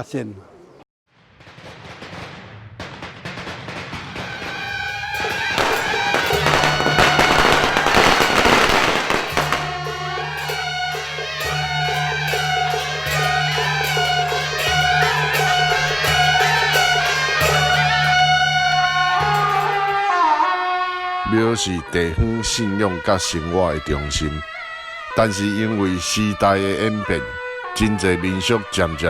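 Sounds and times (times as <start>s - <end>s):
dense crackling: 1.2s - 10.1s
wavering melody: 4.7s - 21.2s.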